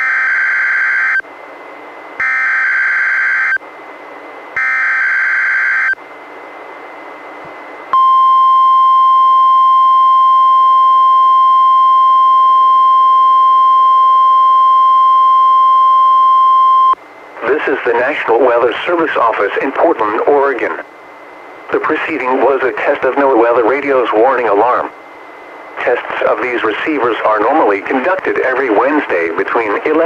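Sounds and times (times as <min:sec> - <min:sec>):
steady warning alarm tone: 0:00.0 - 0:01.3, 0:02.2 - 0:03.7, 0:04.6 - 0:06.0, 0:07.9 - 0:27.7
receiver hiss: 0:07.3 - 0:30.0.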